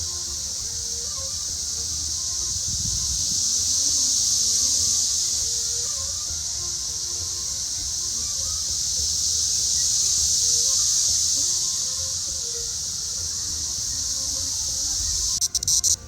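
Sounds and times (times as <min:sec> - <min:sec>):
cicadas droning: 0:00.0 - 0:16.0.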